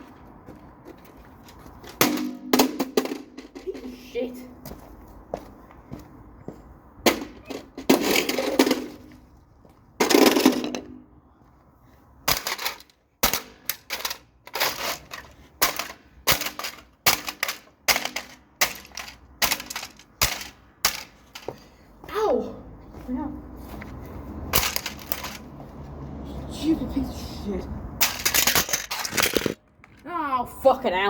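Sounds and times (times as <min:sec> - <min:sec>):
plastic toy being smashed: 0:12.3 - 0:21.1, 0:24.5 - 0:25.4, 0:28.0 - 0:29.6
loose plastic parts rattling: 0:12.3 - 0:21.5, 0:24.5 - 0:25.4, 0:28.0 - 0:29.6.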